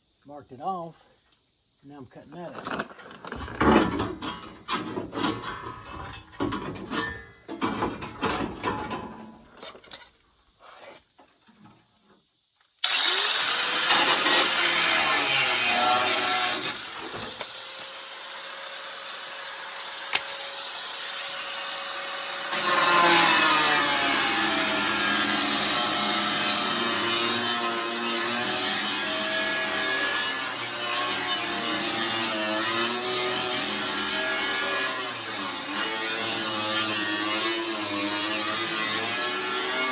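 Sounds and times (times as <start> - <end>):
power tool cutting sheet steel: 12.8 - 39.9.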